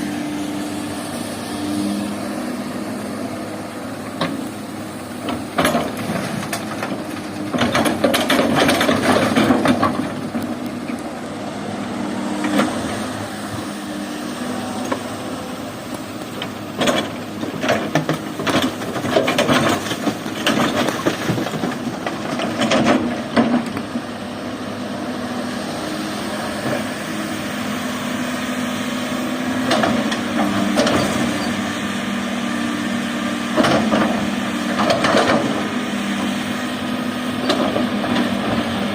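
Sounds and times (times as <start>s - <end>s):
excavator diesel engine: 0.0s - 38.9s
sharp knocks and clatter: 5.2s - 10.5s, 16.4s - 23.8s.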